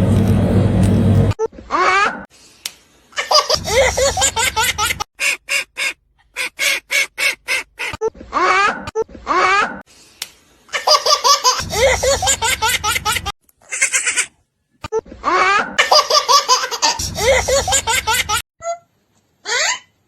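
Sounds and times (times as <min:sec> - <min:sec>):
baby laughing: 0:01.5 - 0:02.3, 0:03.2 - 0:09.8, 0:10.7 - 0:14.3, 0:15.1 - 0:18.8.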